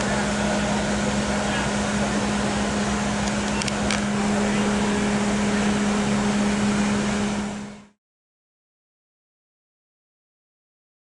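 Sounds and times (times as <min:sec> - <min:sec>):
higher tone: 0:00.0 - 0:08.0
mechanical drone with low hum: 0:00.0 - 0:08.0.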